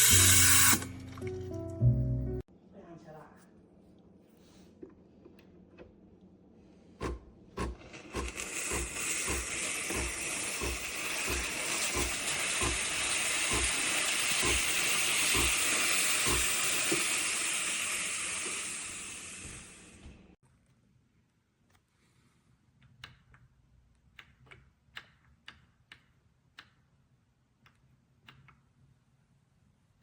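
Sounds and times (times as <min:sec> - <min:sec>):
steam wand hissing: 0:00.0 - 0:00.9, 0:07.9 - 0:20.0
pump thudding: 0:07.0 - 0:17.1.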